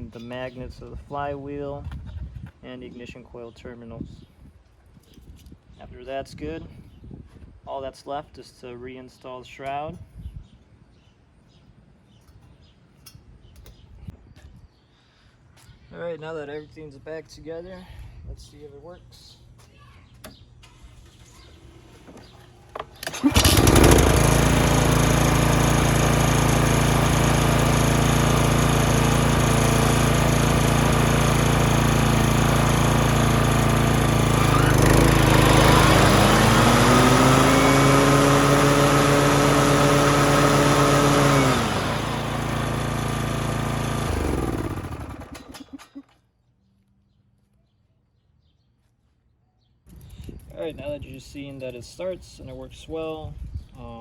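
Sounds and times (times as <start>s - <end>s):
lawn mower engine running: 20.6s - 45.9s.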